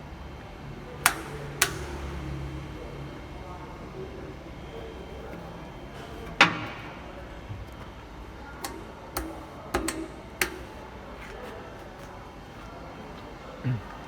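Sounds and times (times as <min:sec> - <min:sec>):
clamps clicking and knocking: 0:01.0 - 0:02.2, 0:08.6 - 0:11.4
pneumatic clamp clack: 0:08.6 - 0:10.8.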